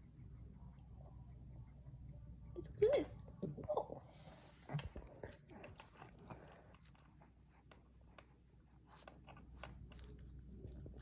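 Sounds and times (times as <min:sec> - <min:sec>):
low room hum: 0:00.0 - 0:11.0
dog chewing leafy greens: 0:04.7 - 0:11.0.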